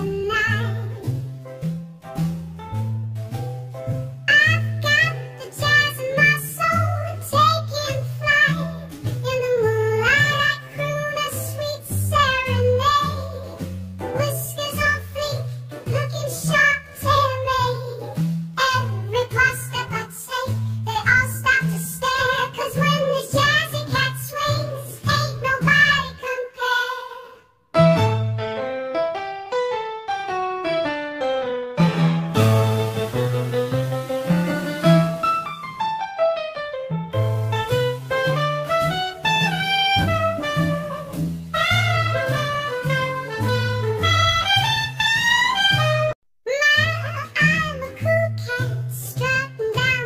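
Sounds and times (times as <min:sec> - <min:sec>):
high-pitched sung melody: 0:00.0 - 0:01.2, 0:04.3 - 0:27.5, 0:32.4 - 0:35.9, 0:37.5 - 0:50.0
children's song with singing: 0:00.0 - 0:01.4, 0:04.2 - 0:27.5, 0:37.6 - 0:50.0
bass line: 0:00.0 - 0:19.8, 0:27.8 - 0:28.8, 0:31.8 - 0:35.8, 0:36.9 - 0:46.2
keyboard melody: 0:27.7 - 0:46.2.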